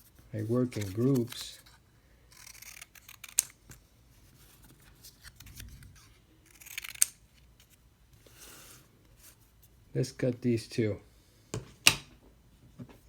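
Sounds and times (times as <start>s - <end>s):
blade scraping through card: 0.4s - 3.6s, 4.3s - 8.8s.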